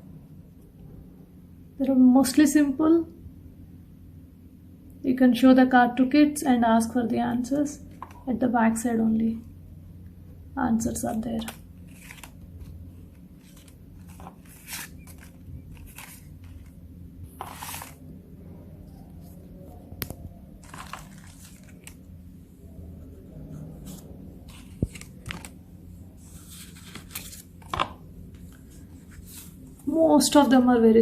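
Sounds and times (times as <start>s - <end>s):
low steady hum: 0.0s - 31.0s
cards rustling and clicking: 7.9s - 8.3s, 11.0s - 18.1s, 20.0s - 22.1s, 23.6s - 29.9s.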